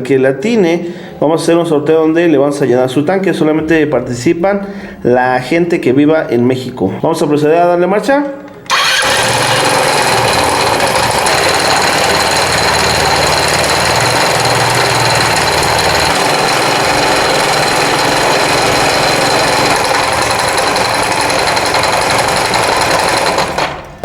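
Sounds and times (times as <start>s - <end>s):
scooter engine knocking rattle: 8.7s - 24.0s.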